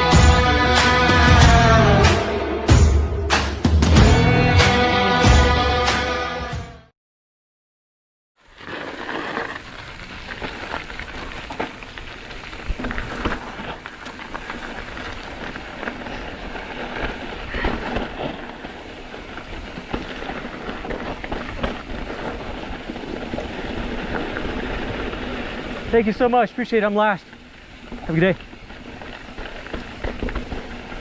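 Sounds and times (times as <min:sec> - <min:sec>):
bike rattling over rocks and gravel: 0:08.4 - 0:31.0
bike brakes squealing: 0:09.0 - 0:15.3, 0:17.4 - 0:18.4, 0:19.8 - 0:20.6, 0:21.3 - 0:21.9, 0:25.0 - 0:26.4, 0:30.3 - 0:31.0.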